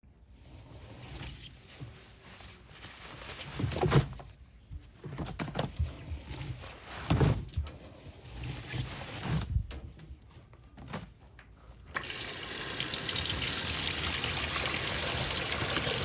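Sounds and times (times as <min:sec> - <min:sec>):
water gurgling in washing machine: 0:12.0 - 0:16.0.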